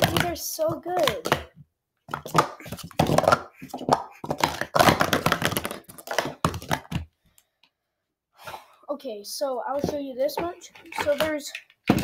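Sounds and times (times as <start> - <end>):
plastic cups clattering: 0.0 - 7.1, 9.8 - 12.0.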